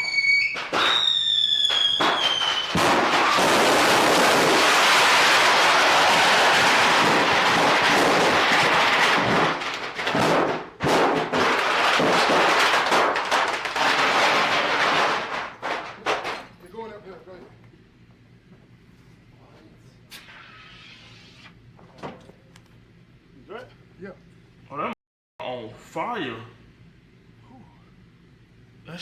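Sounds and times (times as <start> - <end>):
high falling whistle: 0.0 - 3.4
fireworks crackling: 0.0 - 15.8.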